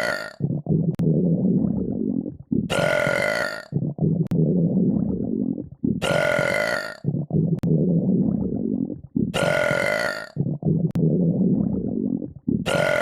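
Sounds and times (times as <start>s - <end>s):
low rasping burps: 0.0s - 0.7s, 2.6s - 4.4s, 5.9s - 7.7s, 9.2s - 11.1s, 12.5s - 13.0s.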